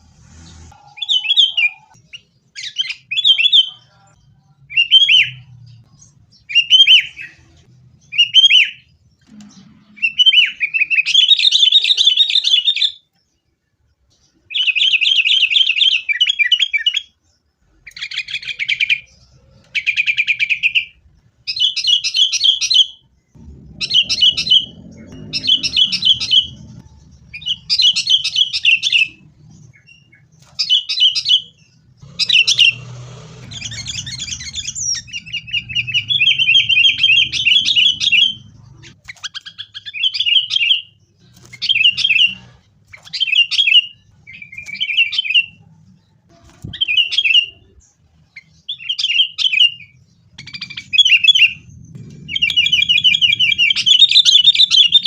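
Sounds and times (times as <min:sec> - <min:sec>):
bulbul chattering calls: 0:23.4 - 0:40.8.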